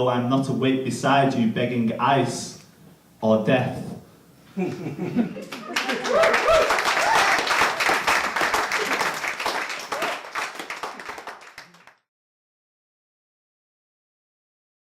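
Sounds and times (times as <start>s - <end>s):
audience applauding: 5.4s - 12.1s.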